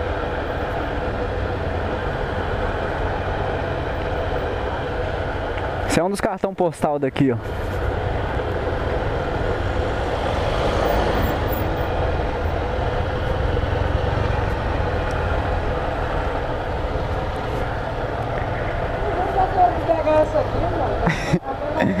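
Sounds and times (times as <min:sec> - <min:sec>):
motorcycle engine running: 0:07.4 - 0:21.0.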